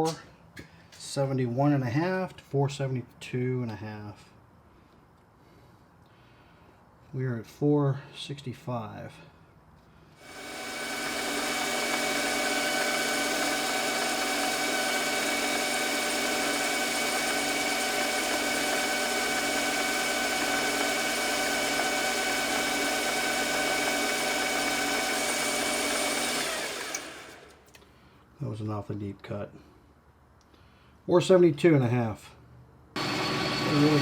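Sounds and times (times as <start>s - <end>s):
metal lathe whining: 10.2s - 27.6s, 33.0s - 34.0s.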